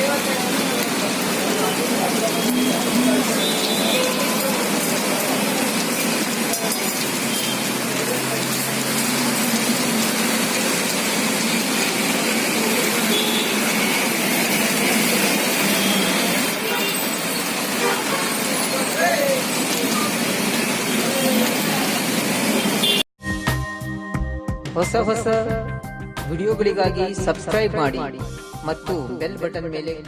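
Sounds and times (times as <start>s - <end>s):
heavy rain pouring: 0.0s - 23.0s.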